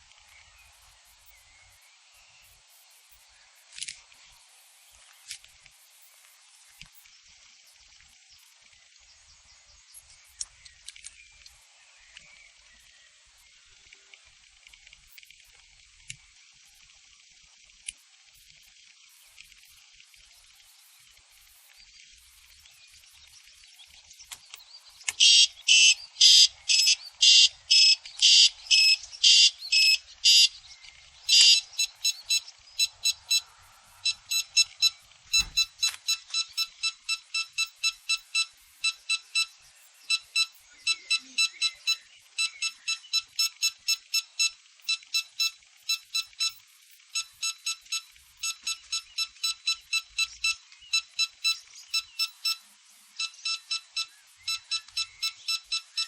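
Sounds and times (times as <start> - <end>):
electronic alarm beeping: 25.1 - 30.6, 31.2 - 56.0.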